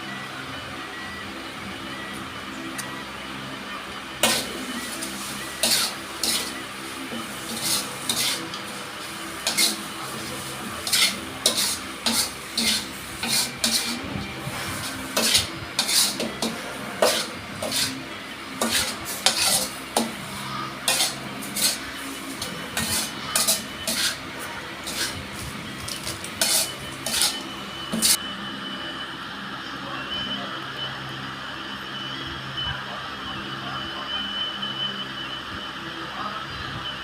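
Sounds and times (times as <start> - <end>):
metal spatula scraping frying pan: 4.2 - 18.0, 18.6 - 28.2
faint sizzle: 4.2 - 28.2.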